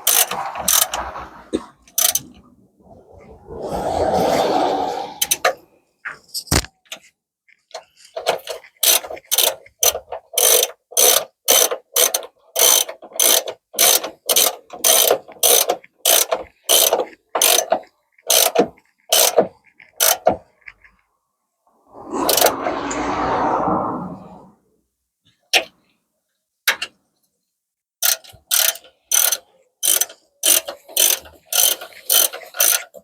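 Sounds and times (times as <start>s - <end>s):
socket ratchet clicking: 28.0s - 32.8s.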